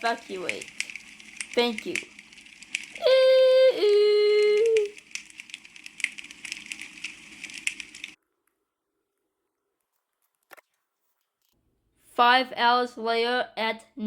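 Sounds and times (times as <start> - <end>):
crackling static: 0.0 - 8.2.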